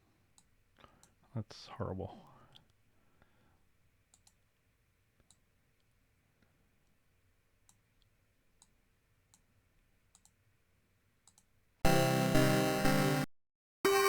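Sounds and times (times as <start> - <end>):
faint mouse clicks: 0.3 - 1.2, 4.1 - 4.4, 5.2 - 7.0, 7.6 - 9.5, 10.1 - 10.4, 11.2 - 11.6.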